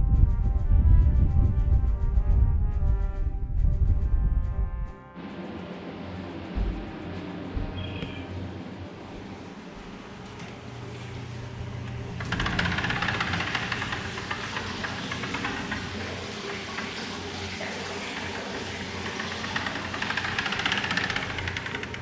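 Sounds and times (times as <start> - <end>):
low steady hum: 0.0 - 13.1.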